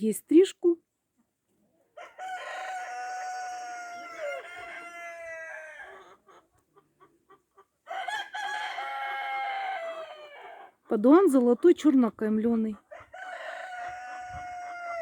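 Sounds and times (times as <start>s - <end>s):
rooster crowing: 2.0s - 6.2s, 7.9s - 10.7s, 12.9s - 15.0s.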